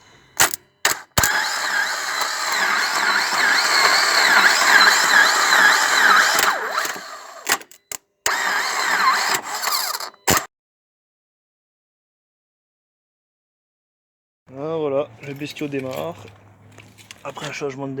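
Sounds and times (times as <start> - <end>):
grinding starter motor: 0.0 - 10.5.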